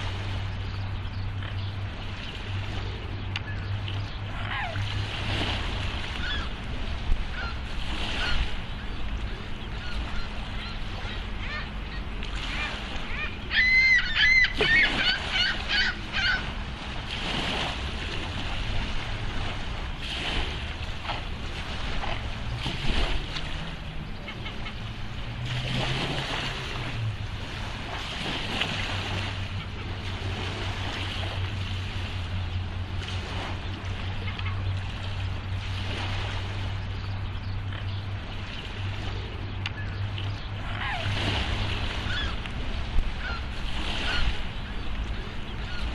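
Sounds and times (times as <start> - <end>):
low hum: 0.0 - 45.9
water noise: 0.0 - 45.9
swan calling: 3.4 - 5.0, 6.0 - 8.9, 9.6 - 16.6, 40.6 - 44.4.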